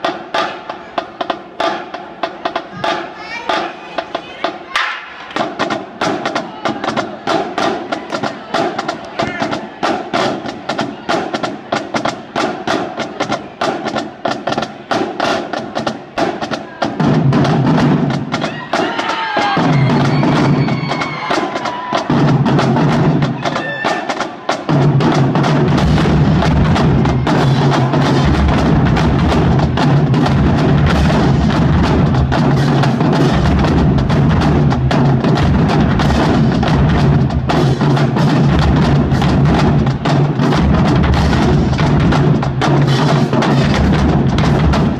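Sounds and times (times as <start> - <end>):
drumline playing: 0.0 - 44.9
bass drums: 24.7 - 44.9.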